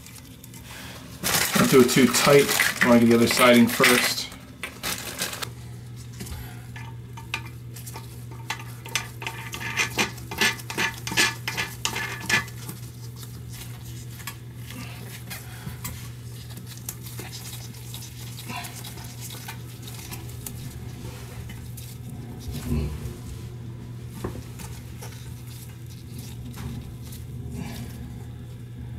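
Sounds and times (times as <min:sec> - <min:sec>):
low hum: 0:18.2 - 0:28.9.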